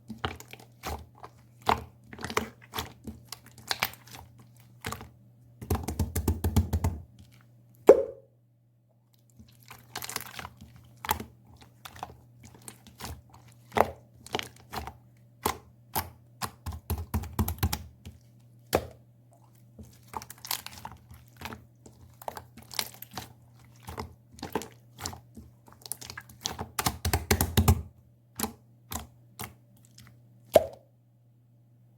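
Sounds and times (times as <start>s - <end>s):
slime air-bubble pops: 7.9s - 8.2s, 30.6s - 30.8s.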